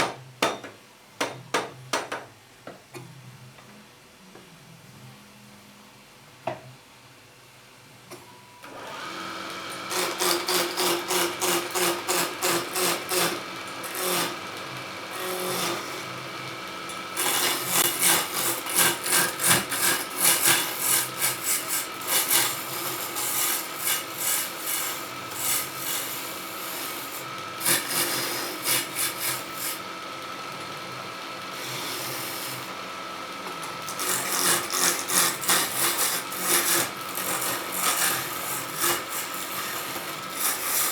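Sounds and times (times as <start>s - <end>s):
wood lathe running: 8.7s - 40.9s
chisel scraping spinning wood: 9.8s - 29.8s, 31.5s - 32.8s, 33.5s - 40.9s.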